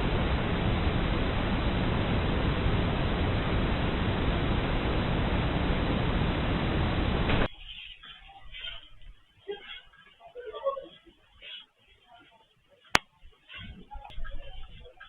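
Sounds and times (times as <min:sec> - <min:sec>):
loud rushing noise: 0:00.0 - 0:07.5.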